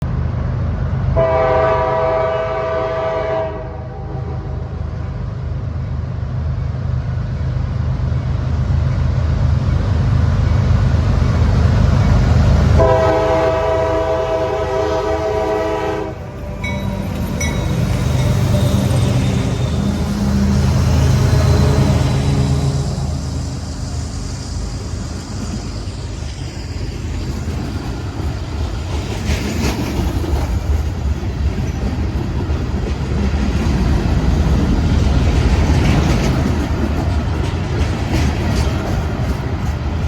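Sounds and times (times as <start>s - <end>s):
diesel train rumble: 0.0s - 40.0s
locomotive horn blasts: 1.2s - 4.7s, 12.8s - 23.2s.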